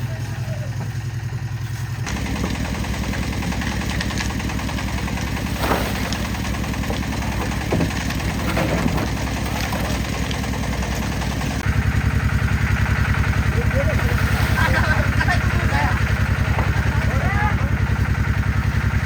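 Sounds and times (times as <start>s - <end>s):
small engine running: 0.0s - 19.0s
short knocks and scrapes: 5.4s - 9.9s.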